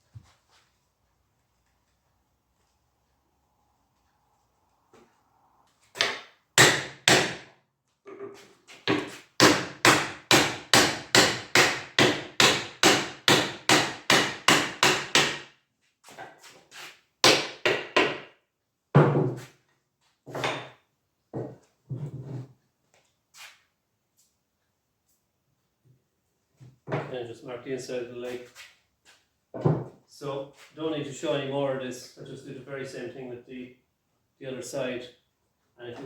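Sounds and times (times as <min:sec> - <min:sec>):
hammer knocking on wood: 0:08.9 - 0:15.4.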